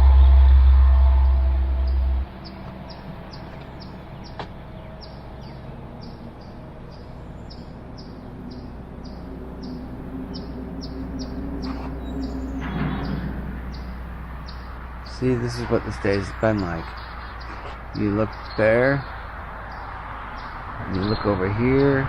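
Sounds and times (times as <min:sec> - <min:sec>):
bird chirping: 0:00.0 - 0:22.0
loud low hum: 0:00.0 - 0:22.0
low steady rumble: 0:00.0 - 0:22.0.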